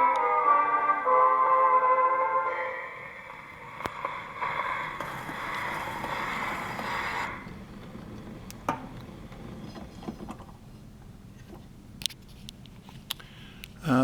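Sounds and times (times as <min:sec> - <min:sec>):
gramophone needle hiss and scratch: 0:03.0 - 0:10.1.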